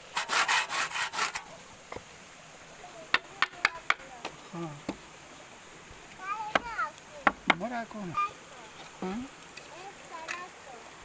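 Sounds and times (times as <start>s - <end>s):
rasping against wood: 0.0s - 1.5s.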